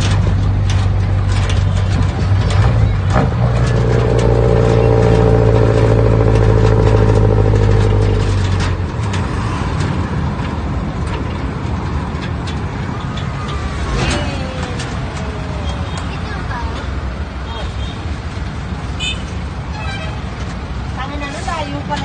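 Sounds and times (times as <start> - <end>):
diesel engine exhaust note: 0.0 - 9.0.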